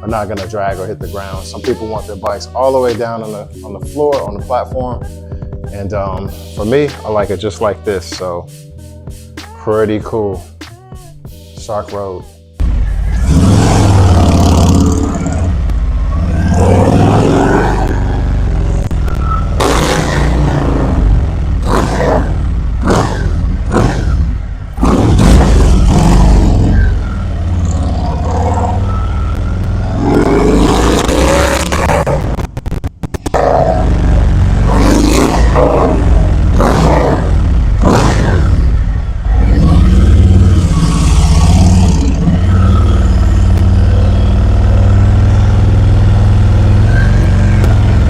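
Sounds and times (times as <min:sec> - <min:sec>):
motorcycle engine rumbling and revving: 0:12.6 - 0:48.0.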